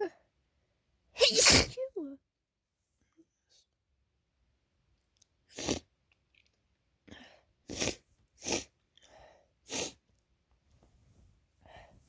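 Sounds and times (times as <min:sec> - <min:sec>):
woman sneezing: 0:01.2 - 0:01.8.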